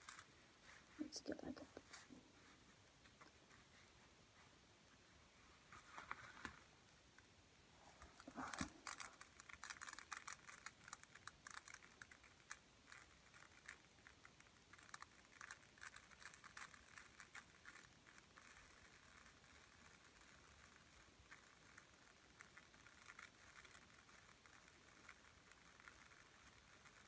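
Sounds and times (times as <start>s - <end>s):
rice grains pattering: 8.0s - 27.0s.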